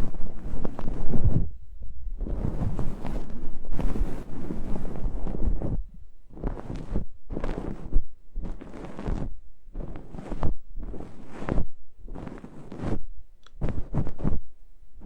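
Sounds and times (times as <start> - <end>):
fluffy stick brushing microphone: 0.0 - 14.5.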